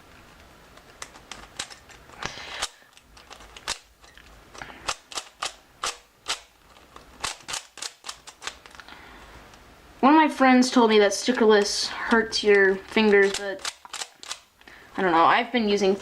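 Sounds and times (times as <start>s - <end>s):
puzzle cube plastic clicks: 0.2s - 9.0s, 11.6s - 14.6s.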